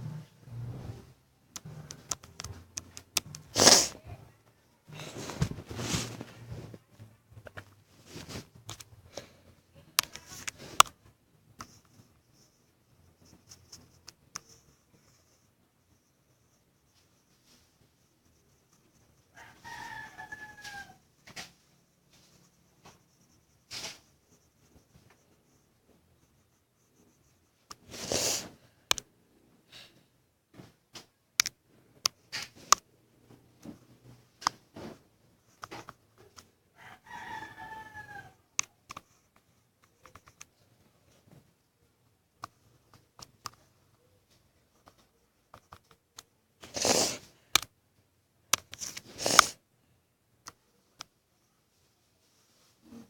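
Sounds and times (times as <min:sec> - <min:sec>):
drawing tool scratching paper: 0:03.5 - 0:04.0, 0:21.8 - 0:28.5, 0:46.6 - 0:47.3, 0:48.8 - 0:49.6.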